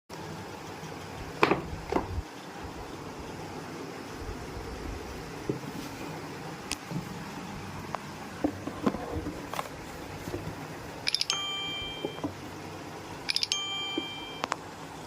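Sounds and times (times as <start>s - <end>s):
bright chime: 11.1s - 12.3s, 13.3s - 14.5s.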